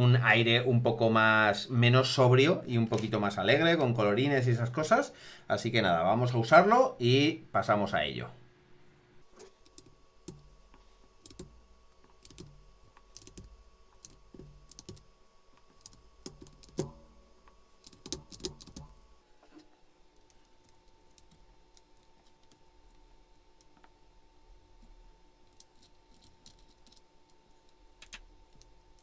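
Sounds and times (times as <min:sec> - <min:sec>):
plastic keycaps clicking: 0:09.6 - 0:15.1, 0:15.7 - 0:17.1, 0:17.9 - 0:19.1.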